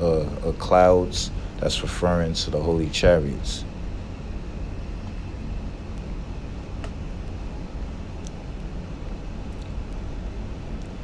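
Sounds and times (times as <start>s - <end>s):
air conditioning blowing from vent: 0.0s - 11.0s.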